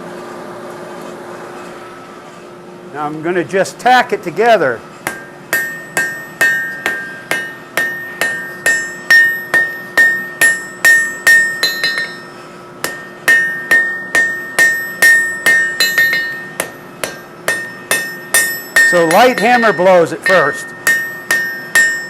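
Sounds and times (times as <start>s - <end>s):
anvil ringing: 5.0s - 22.0s
hammer blows on anvil: 5.0s - 22.0s.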